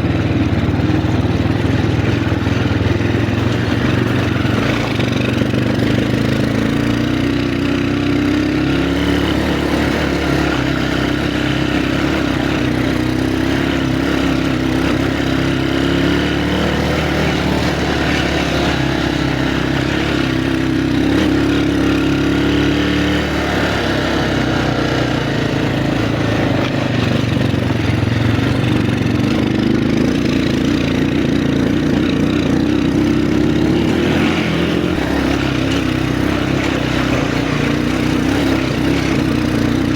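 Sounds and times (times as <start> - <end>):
noisy drive rumble: 0.0 - 7.4
vehicle engine revving under load: 0.0 - 39.9.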